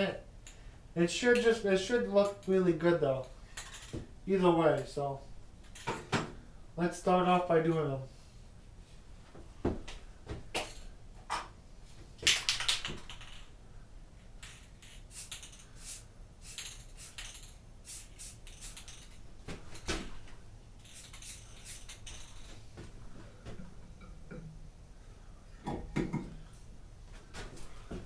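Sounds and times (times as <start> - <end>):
spray paint can hissing: 14.8 - 19.2, 20.8 - 22.3.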